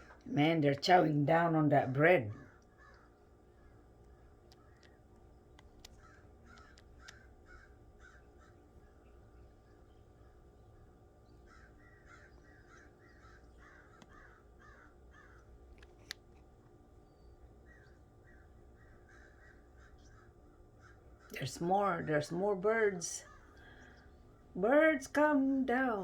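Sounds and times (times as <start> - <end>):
faint bird calls: 2.4 - 5.1, 5.8 - 16.1, 17.0 - 21.4, 23.2 - 24.5.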